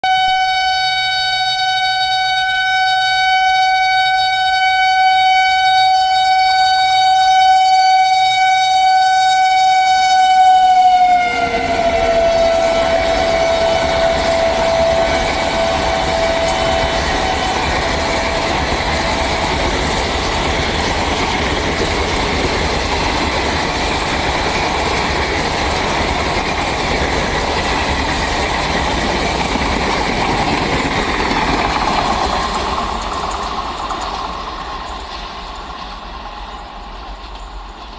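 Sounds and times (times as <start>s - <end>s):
locomotive horn blast: 0.0s - 20.0s
train wheels on rails: 1.0s - 37.9s.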